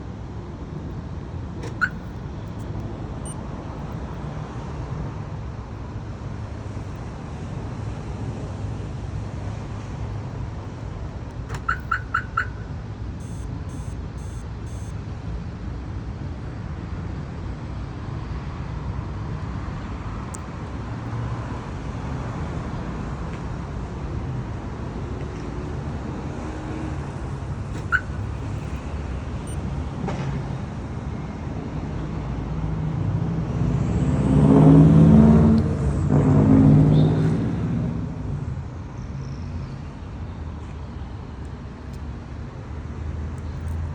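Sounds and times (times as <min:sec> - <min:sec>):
traffic rumble: 0:00.0 - 0:43.9
car alarm chirping: 0:01.6 - 0:02.2, 0:11.5 - 0:14.9, 0:27.8 - 0:28.7
faint high short beeps: 0:13.2 - 0:15.0
vehicle passing: 0:33.6 - 0:38.2.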